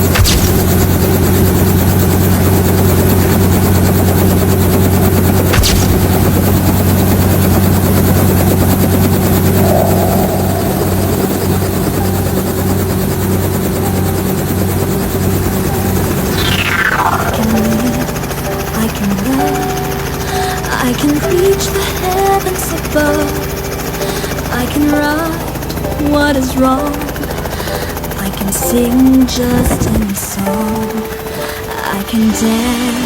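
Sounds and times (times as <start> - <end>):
helicopter rotor and engine: 0.0 - 33.0
sharp click: 5.6 - 6.3.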